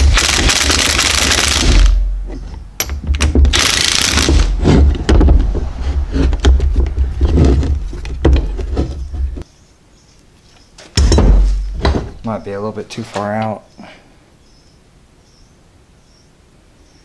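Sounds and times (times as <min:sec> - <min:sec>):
clicks and knocks of metal parts: 0:00.1 - 0:05.3
air tool running: 0:03.5 - 0:04.5.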